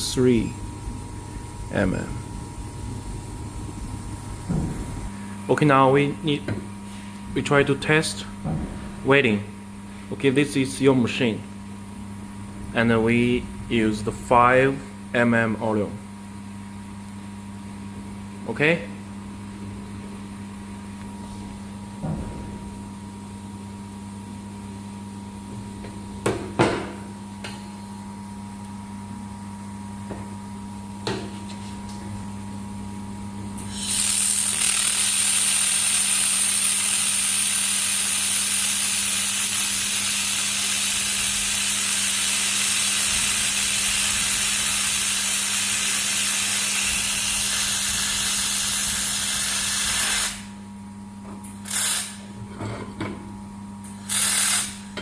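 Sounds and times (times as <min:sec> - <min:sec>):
laser welding hiss: 0:00.0 - 0:05.2, 0:33.6 - 0:50.5, 0:51.6 - 0:52.3, 0:54.0 - 0:54.9
low machine hum: 0:00.0 - 0:34.6.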